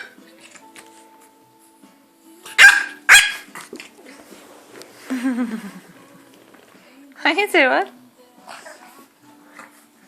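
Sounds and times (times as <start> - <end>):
puppy barking: 2.5 - 3.5.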